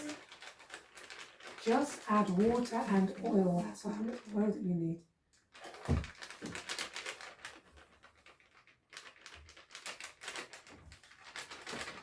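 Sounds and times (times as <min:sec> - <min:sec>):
light clicks and rustles: 0:05.4 - 0:12.0.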